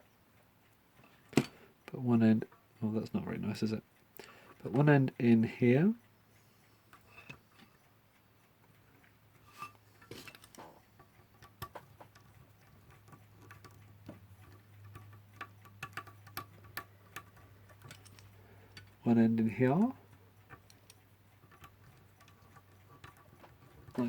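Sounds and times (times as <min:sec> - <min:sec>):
small clicks and taps of wire: 0:06.9 - 0:19.1, 0:19.7 - 0:24.0.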